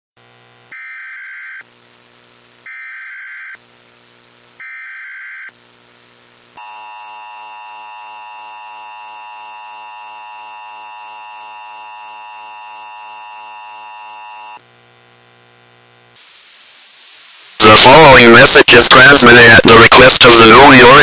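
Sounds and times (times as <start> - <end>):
faint hiss: 16.1 - 18.4.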